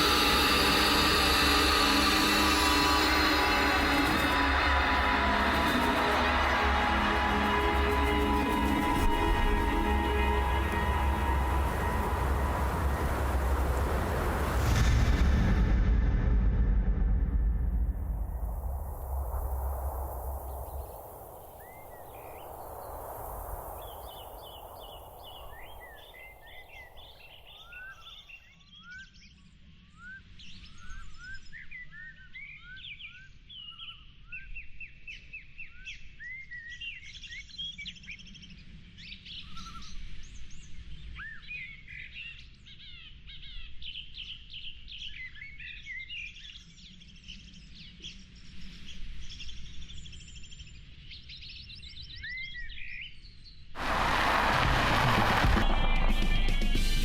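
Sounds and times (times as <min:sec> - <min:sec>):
broad hiss: 0:00.0 - 0:15.0, 0:53.8 - 0:57.0
low rumble: 0:00.0 - 0:27.9, 0:53.8 - 0:57.0.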